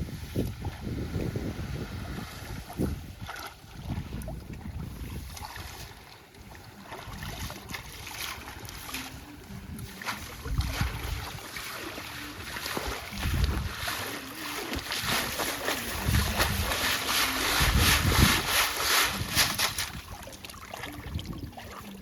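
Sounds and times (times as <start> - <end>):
wind gusting on microphone: 0.0 - 5.4, 9.5 - 11.4, 13.1 - 14.1, 14.8 - 20.2
surf: 0.0 - 21.1.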